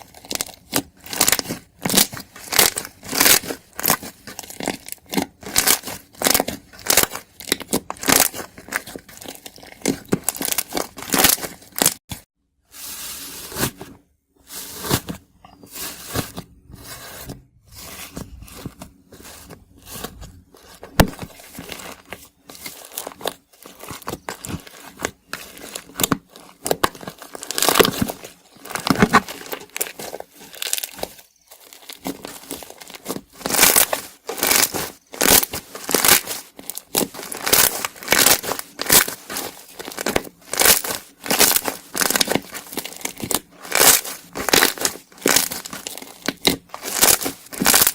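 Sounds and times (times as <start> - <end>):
slime crust crackling and crunching: 0.0 - 12.3, 15.6 - 47.9.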